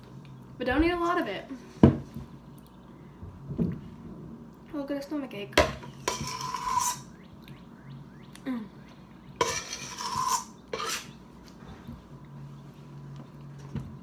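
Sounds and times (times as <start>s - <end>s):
spoon scraping mixing bowl: 5.9s - 7.1s, 9.4s - 11.2s.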